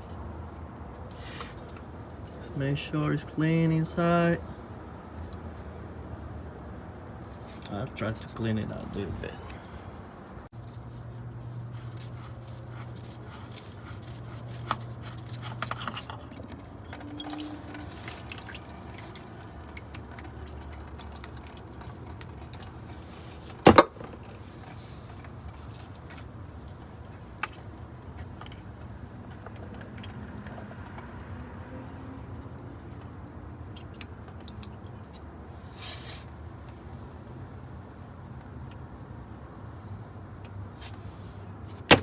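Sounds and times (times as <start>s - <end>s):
low steady hum: 0.0s - 28.9s.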